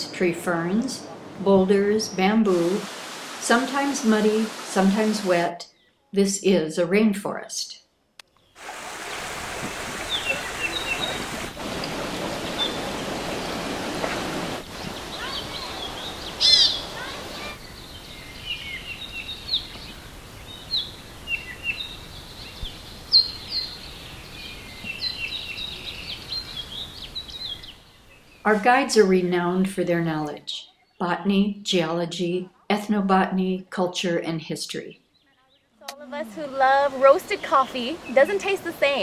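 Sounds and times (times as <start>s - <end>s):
flowing water rushing: 2.5s - 5.4s, 8.6s - 22.2s, 36.0s - 39.0s
birds chirping and calling: 10.0s - 13.7s, 14.7s - 28.6s, 35.2s - 39.0s.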